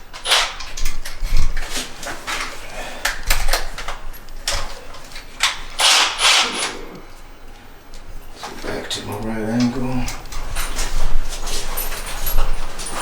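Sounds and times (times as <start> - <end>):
tools and parts clattering: 0.0 - 13.0
short sharp noisy bursts: 5.3 - 8.4.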